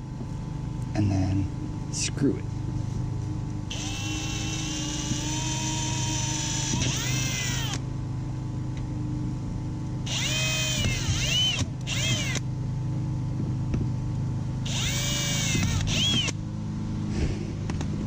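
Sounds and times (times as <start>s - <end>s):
steady low hum: 0.0s - 18.0s
power drill motor whine: 3.7s - 7.9s, 10.0s - 12.5s, 14.6s - 16.4s.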